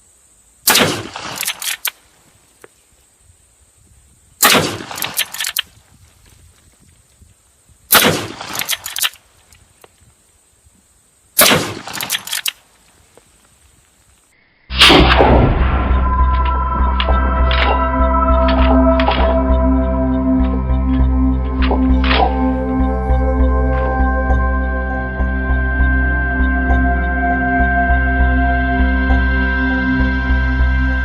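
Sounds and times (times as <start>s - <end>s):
rifle shots: 0.7s - 1.9s, 4.4s - 5.6s, 7.9s - 9.2s, 11.4s - 12.6s, 14.8s - 16.0s
sharp clicks of rifle action: 0.7s - 2.0s, 4.4s - 5.8s, 7.9s - 10.0s, 11.4s - 12.7s.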